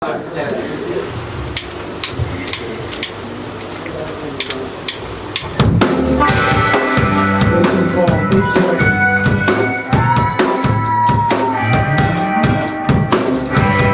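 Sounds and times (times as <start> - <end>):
live band music: 5.4 - 13.9
sharp drum hits: 5.4 - 13.9
low bass notes: 5.5 - 13.9.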